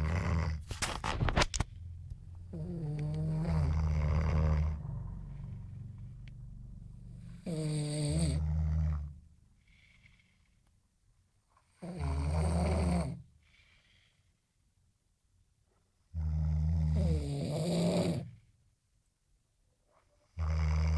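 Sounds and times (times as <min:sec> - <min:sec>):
person snoring loudly: 0:02.5 - 0:05.8, 0:07.3 - 0:09.0, 0:20.4 - 0:20.9.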